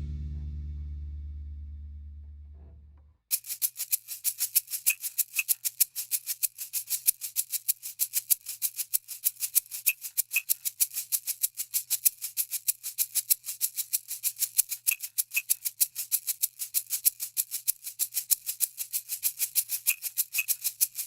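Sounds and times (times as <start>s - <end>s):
low note: 0.0s - 3.2s
maraca-like rattle shaking: 3.3s - 21.0s.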